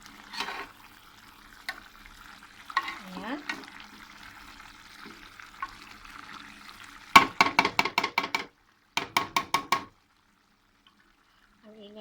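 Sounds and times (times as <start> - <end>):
food sizzling in a pan: 0.0 - 12.0
metal spoon tapping a pan: 7.2 - 9.9.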